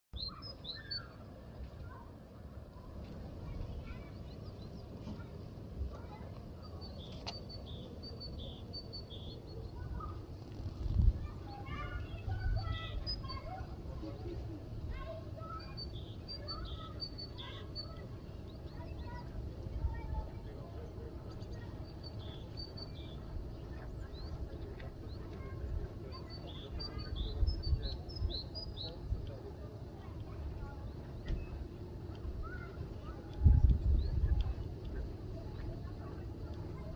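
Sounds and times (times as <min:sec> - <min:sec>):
bird chirps: 0:00.2 - 0:01.3, 0:03.6 - 0:10.2, 0:11.2 - 0:14.2, 0:14.9 - 0:19.3, 0:20.7 - 0:29.1
steady low rumble: 0:01.0 - 0:36.9.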